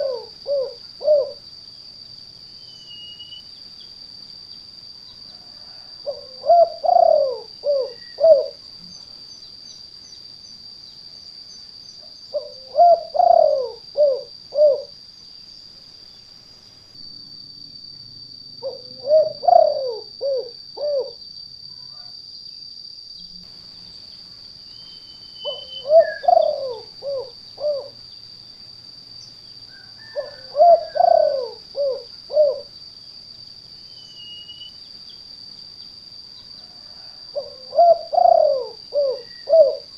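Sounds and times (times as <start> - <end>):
dove cooing: 0.0 - 1.4, 5.6 - 8.6, 12.3 - 15.0, 18.6 - 21.2, 25.4 - 28.0, 29.8 - 32.7, 36.8 - 39.9.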